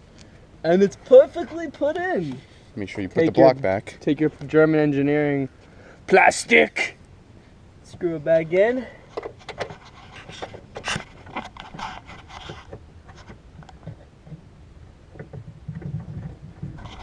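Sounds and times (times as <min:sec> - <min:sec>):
scraping rubs: 0:09.1 - 0:14.4, 0:15.2 - 0:17.0.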